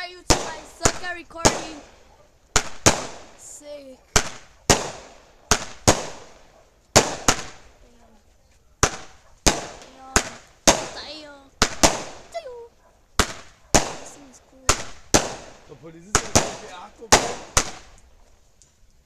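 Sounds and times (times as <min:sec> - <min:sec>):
firework bangs with echo: 0:00.2 - 0:03.5, 0:04.1 - 0:07.8, 0:08.8 - 0:12.3, 0:13.2 - 0:18.0.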